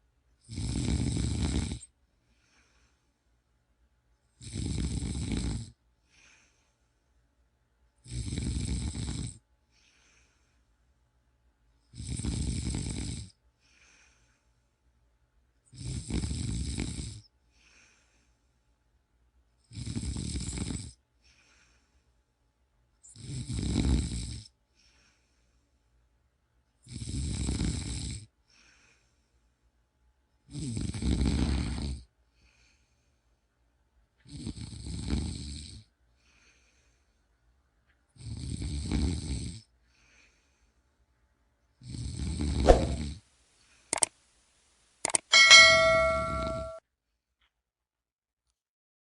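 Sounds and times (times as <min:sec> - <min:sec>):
loud snoring: 0:00.5 - 0:01.9, 0:04.4 - 0:05.8, 0:08.0 - 0:09.4, 0:11.9 - 0:13.3, 0:15.7 - 0:17.2, 0:19.7 - 0:20.9, 0:23.1 - 0:24.5, 0:26.9 - 0:28.3, 0:30.5 - 0:32.1, 0:34.3 - 0:35.8, 0:38.2 - 0:39.6, 0:41.8 - 0:43.2
faint breath: 0:02.2 - 0:03.4, 0:06.0 - 0:07.2, 0:09.6 - 0:10.8, 0:13.6 - 0:14.9, 0:17.4 - 0:18.8, 0:21.2 - 0:22.3, 0:24.7 - 0:26.0, 0:28.4 - 0:29.7, 0:32.3 - 0:33.5, 0:36.1 - 0:37.4, 0:39.8 - 0:41.0.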